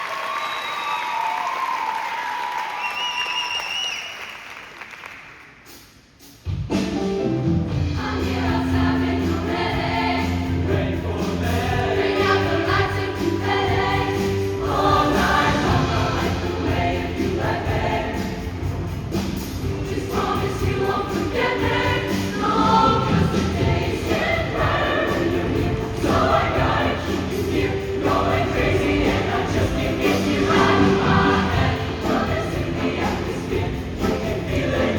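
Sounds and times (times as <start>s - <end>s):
applause: 0.0s - 5.7s
choir singing: 7.7s - 34.9s.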